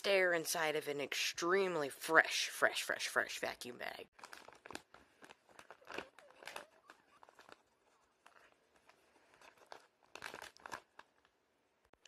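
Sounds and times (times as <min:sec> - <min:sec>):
vacuum bag rustling and crinkling: 0:04.1 - 0:11.3.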